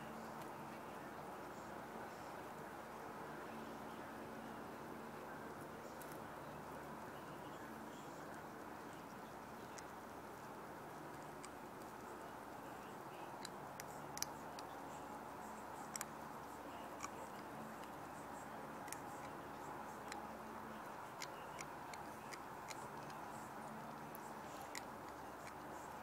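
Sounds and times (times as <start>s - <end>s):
faint steady hiss: 0.0s - 26.0s
puppy chewing bone crunches: 15.5s - 26.0s.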